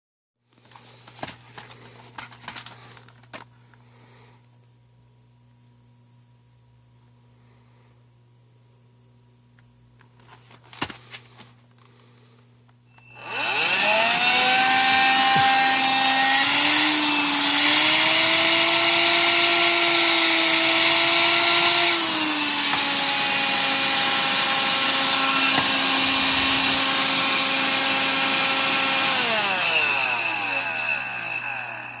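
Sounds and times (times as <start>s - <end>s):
vacuum cleaner motor whine: 12.9s - 32.0s.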